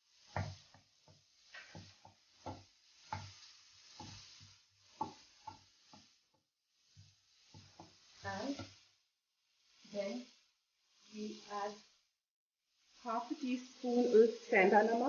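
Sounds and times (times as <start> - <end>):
spoon scraping and knocking pan: 0.0 - 9.0
faint sizzle: 0.0 - 15.0.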